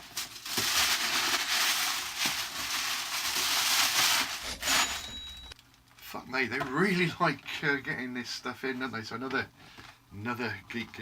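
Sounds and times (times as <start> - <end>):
packaging rustling and crinkling: 0.0 - 6.1.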